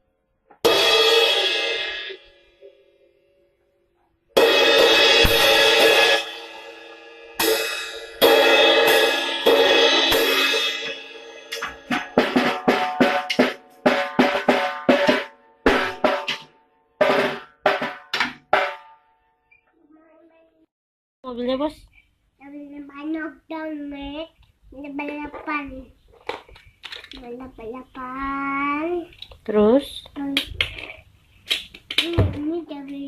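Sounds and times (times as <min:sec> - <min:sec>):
drum kit music with cymbals: 0:00.6 - 0:02.8, 0:04.4 - 0:19.0.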